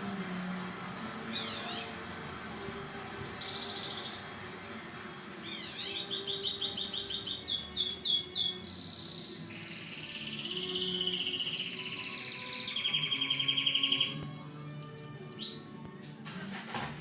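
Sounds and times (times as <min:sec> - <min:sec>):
songbird singing trills: 0:01.2 - 0:04.4, 0:05.4 - 0:15.8.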